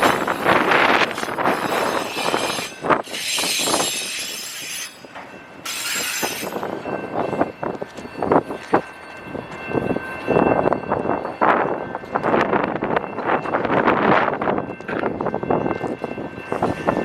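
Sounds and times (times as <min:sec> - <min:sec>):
knocks of rail cars: 0:00.0 - 0:10.7, 0:12.0 - 0:17.0
high hissing rail noise: 0:01.4 - 0:06.8.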